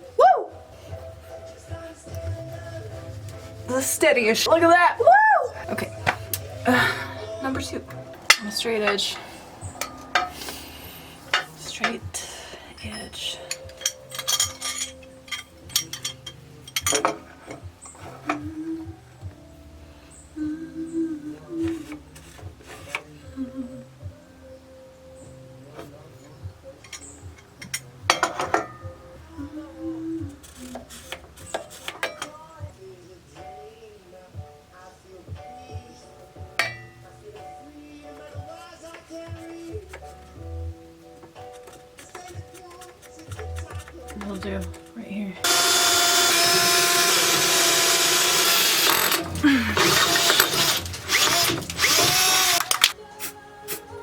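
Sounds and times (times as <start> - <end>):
person humming: 5.1 - 8.0, 18.3 - 19.1, 20.3 - 22.1, 23.0 - 24.4, 48.6 - 54.0
metal parts clanking: 8.3 - 10.6, 12.8 - 18.4, 45.5 - 53.0
power drill boring into metal: 45.4 - 52.9.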